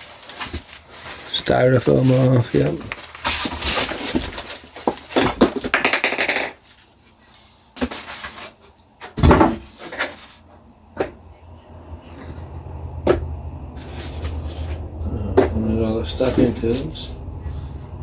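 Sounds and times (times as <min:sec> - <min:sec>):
styrofoam scraping and rustling: 0:00.0 - 0:05.6
styrofoam pieces knocking: 0:02.6 - 0:06.6.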